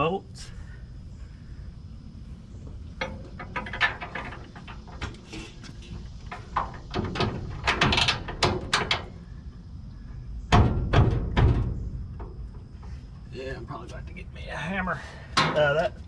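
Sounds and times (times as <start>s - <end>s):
metal bolts clinking and scraping: 3.0s - 9.2s
heavy metal knock: 10.5s - 12.7s.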